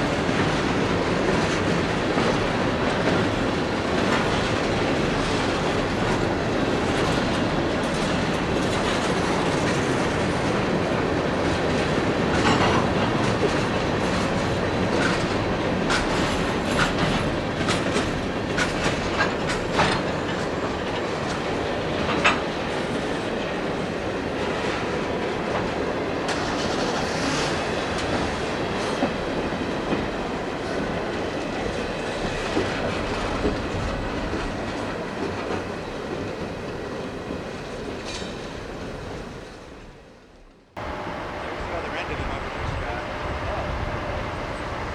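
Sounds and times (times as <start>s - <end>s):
train cars rumbling: 0.0s - 44.9s
wheels clicking over rail joints: 0.3s - 23.7s.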